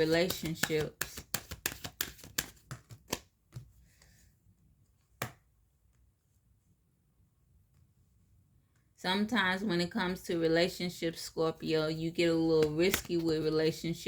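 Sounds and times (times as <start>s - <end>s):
cards being shuffled: 0.0s - 3.7s, 12.6s - 13.5s
card snap: 0.1s - 3.3s, 12.6s - 13.2s.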